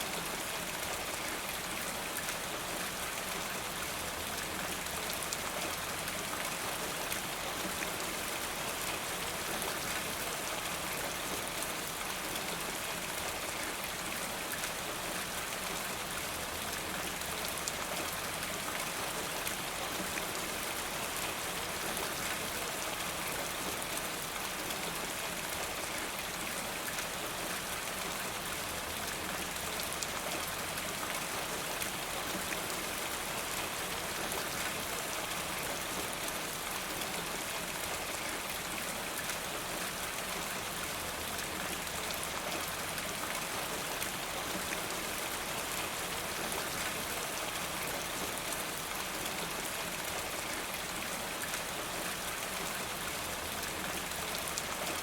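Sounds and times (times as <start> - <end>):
rain falling on a gutter: 0.0 - 55.0.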